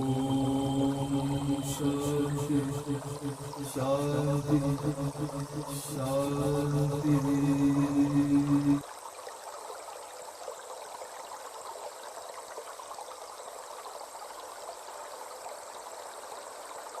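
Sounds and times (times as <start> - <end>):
person chanting held note: 0.0 - 8.8
flowing stream water: 0.0 - 17.0.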